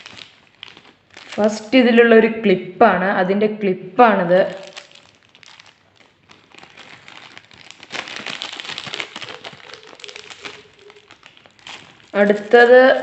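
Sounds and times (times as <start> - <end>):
plastic bag crinkling: 0.0 - 1.7, 4.5 - 13.0.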